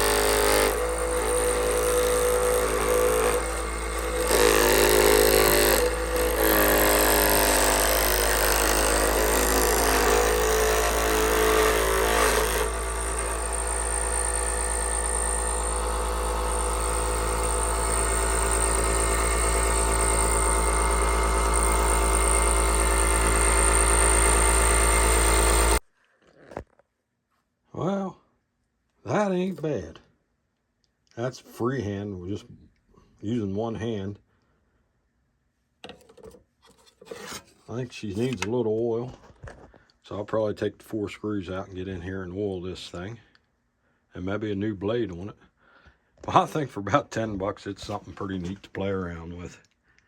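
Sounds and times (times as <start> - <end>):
scroll saw motor buzzing: 0.0 - 25.8.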